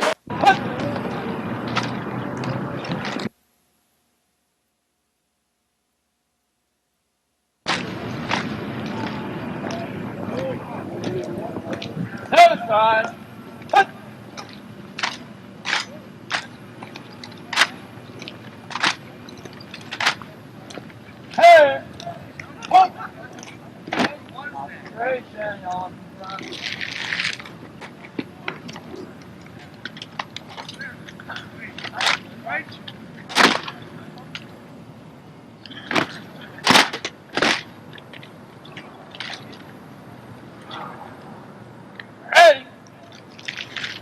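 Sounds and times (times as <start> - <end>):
rifle slaps: 33.3 - 33.8, 36.0 - 37.6.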